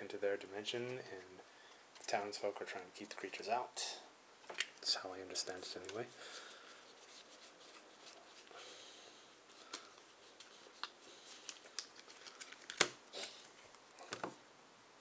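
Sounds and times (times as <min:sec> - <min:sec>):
cards rustling and clicking: 0:05.6 - 0:08.5, 0:09.5 - 0:14.4.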